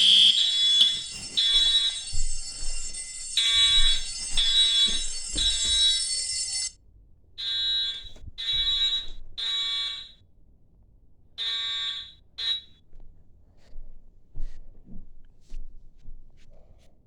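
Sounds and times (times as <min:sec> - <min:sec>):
fire alarm blasts: 0:00.0 - 0:06.8, 0:07.4 - 0:10.2, 0:11.4 - 0:12.8.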